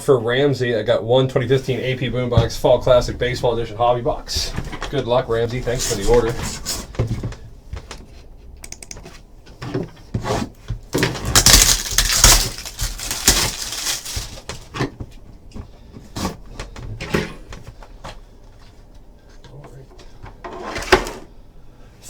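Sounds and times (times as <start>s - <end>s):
packaging rustling: 11.0s - 14.7s.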